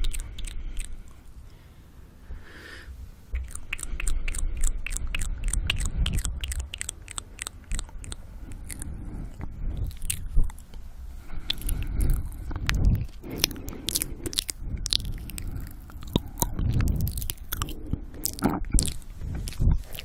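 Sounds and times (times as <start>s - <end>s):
wet lip and tongue clicks: 0.0s - 1.3s, 3.3s - 20.0s
heavy breathing on microphone: 8.2s - 20.0s.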